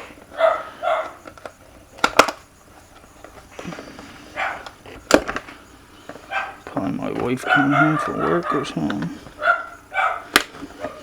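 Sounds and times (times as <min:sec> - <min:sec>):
dog barking: 0:00.3 - 0:01.2, 0:04.3 - 0:04.7, 0:06.3 - 0:06.6, 0:07.3 - 0:11.0.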